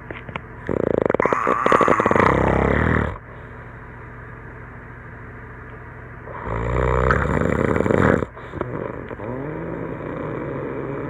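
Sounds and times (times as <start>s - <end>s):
man snoring: 0.6s - 3.2s, 6.3s - 11.0s
frog-like sound: 0.9s - 3.2s.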